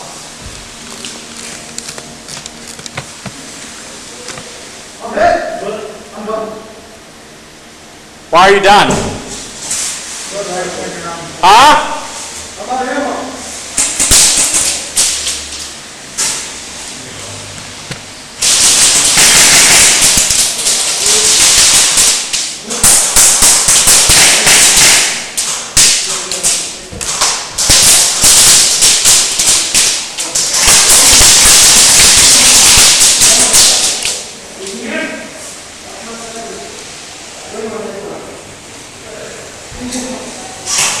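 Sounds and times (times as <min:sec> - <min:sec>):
airsoft gun rapid fire: 0:18.4 - 0:25.2, 0:27.6 - 0:34.0.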